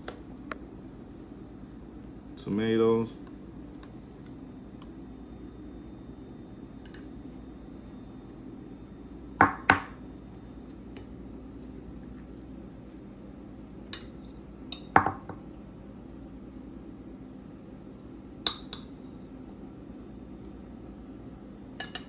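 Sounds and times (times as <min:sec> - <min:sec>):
low steady hum: 0:00.0 - 0:22.0
utensil clinking against a dish: 0:18.4 - 0:19.0, 0:21.8 - 0:22.0.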